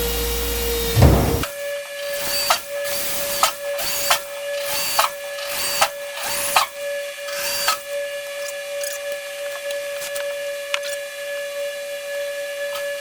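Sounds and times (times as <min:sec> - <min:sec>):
electric drill whining: 0:00.0 - 0:13.0
drill bit squeaking on metal: 0:02.0 - 0:09.0.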